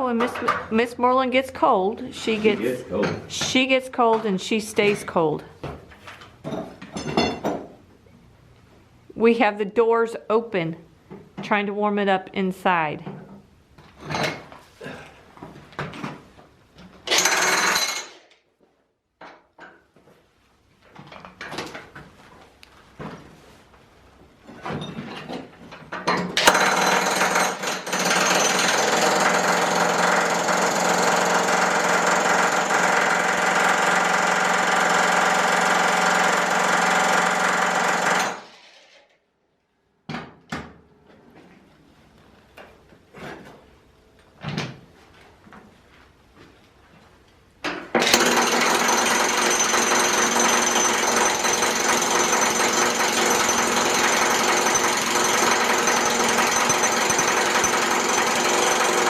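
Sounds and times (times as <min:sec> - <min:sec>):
power hammer chisel chipping metal: 0:48.0 - 0:59.0.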